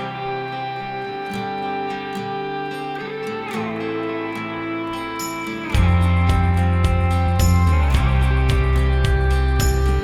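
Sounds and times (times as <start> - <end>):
instrumental music with guitar: 0.0 - 10.0
bass line: 5.8 - 10.0
steady beat: 5.8 - 10.0.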